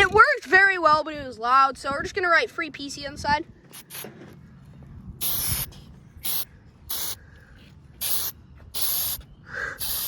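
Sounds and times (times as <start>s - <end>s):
spray can hissing: 5.2s - 7.2s, 8.0s - 9.2s, 9.8s - 10.0s.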